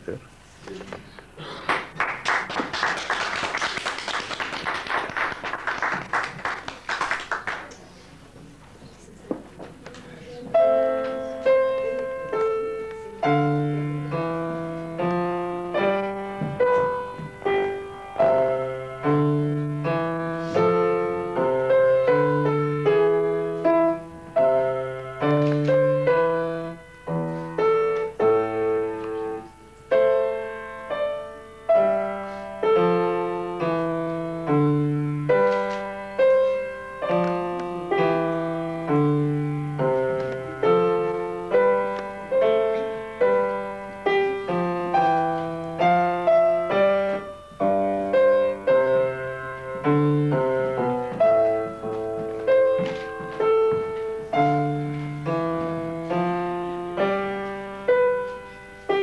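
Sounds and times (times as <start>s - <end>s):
piano piece: 1.3s - 59.0s.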